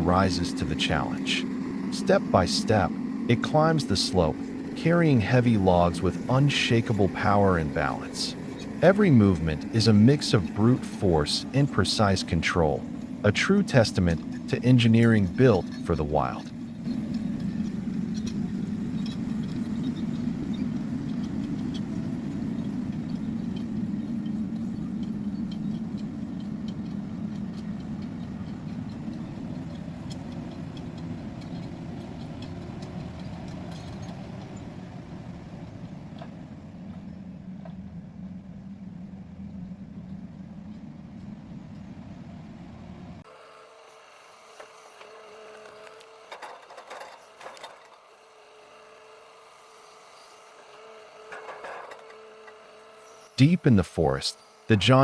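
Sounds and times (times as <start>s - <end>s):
steady hum: 0.0s - 43.3s
diesel engine under load: 0.0s - 55.0s.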